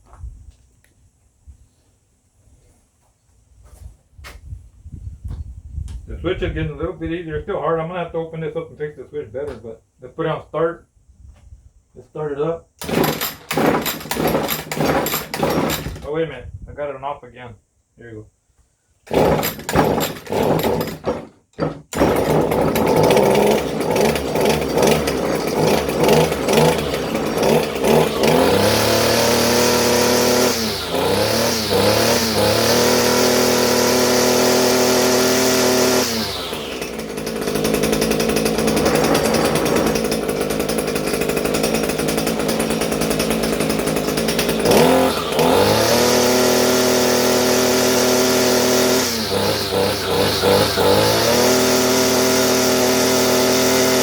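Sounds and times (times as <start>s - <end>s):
starter cord pulls: 12.8s - 16.1s, 19.1s - 54.0s
string trimmer engine running: 12.8s - 16.1s, 19.1s - 54.0s.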